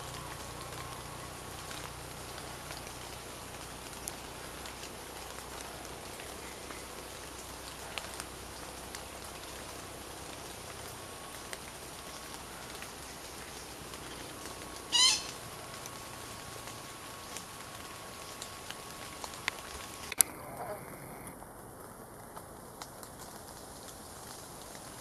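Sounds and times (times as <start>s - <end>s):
faint ticks: 0.0s - 25.0s
forest background hiss: 0.0s - 25.0s
short loud bird call: 14.9s - 15.4s.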